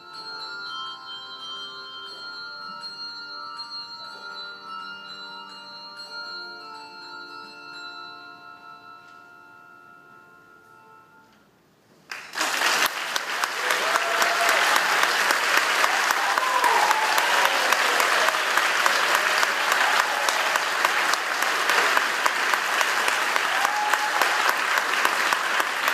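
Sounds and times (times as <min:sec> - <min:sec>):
audience applause: 0:12.1 - 0:25.9
cheers and shouts: 0:13.5 - 0:22.0, 0:23.2 - 0:25.1.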